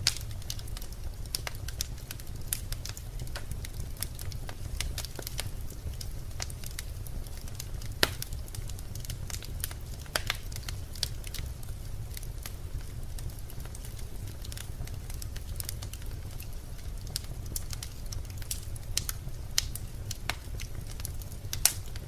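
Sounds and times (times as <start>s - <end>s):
fire flames rumbling: 0.0s - 22.0s
wood crackling and popping: 0.0s - 22.0s.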